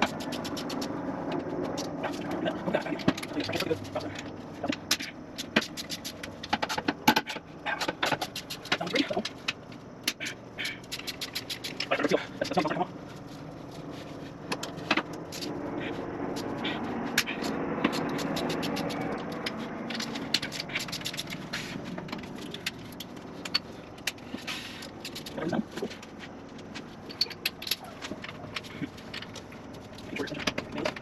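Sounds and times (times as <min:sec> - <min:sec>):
hand tools clicking on metal: 0:00.0 - 0:12.8, 0:14.5 - 0:31.0
steady low hum: 0:00.0 - 0:31.0.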